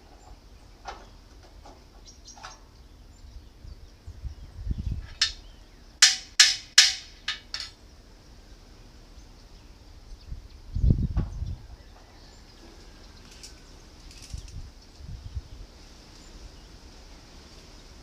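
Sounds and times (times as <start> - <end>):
hammer clanking on steel: 5.1 - 5.4, 6.0 - 7.8.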